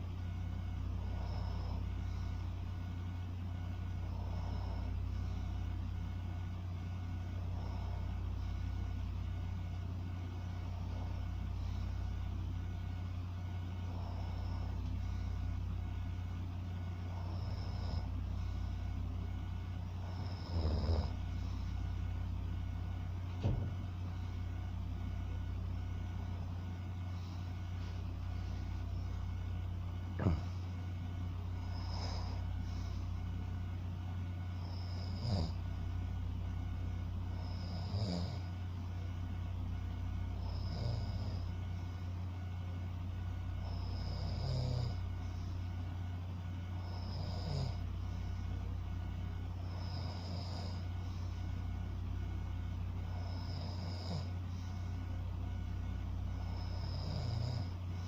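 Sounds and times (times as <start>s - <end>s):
steady low hum: 0.0s - 58.0s
person breathing slowly: 0.8s - 3.0s, 3.6s - 23.0s, 24.0s - 33.7s, 49.5s - 51.7s, 52.9s - 55.2s
light snoring: 0.9s - 24.4s, 25.0s - 33.6s, 34.4s - 35.8s, 37.2s - 38.7s, 40.2s - 42.1s, 43.5s - 45.7s, 46.5s - 48.6s, 49.2s - 51.8s, 52.7s - 55.1s, 56.2s - 58.0s.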